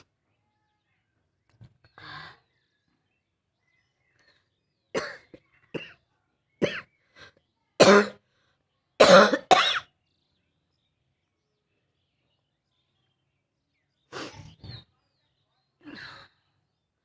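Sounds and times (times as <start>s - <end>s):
person coughing: 9.0s - 9.9s.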